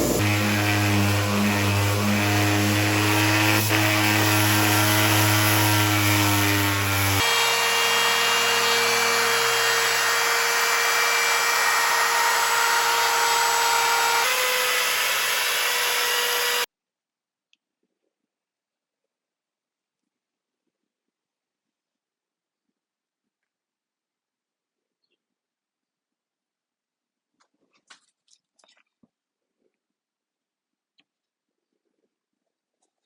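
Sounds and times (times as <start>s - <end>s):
electric power tool running: 0.0s - 16.7s.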